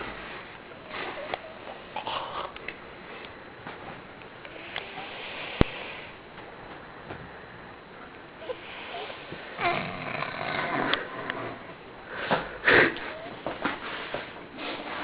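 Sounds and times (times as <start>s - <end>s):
woman snoring: 8.4s - 11.8s.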